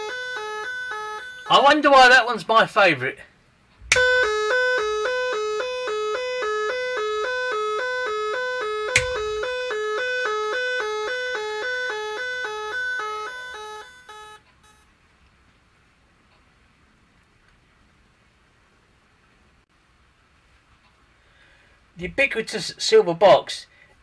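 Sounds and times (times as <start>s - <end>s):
electronic car horn playing a tune: 0.0s - 2.1s, 3.9s - 14.8s
sharp click: 3.8s - 5.0s, 8.9s - 9.6s.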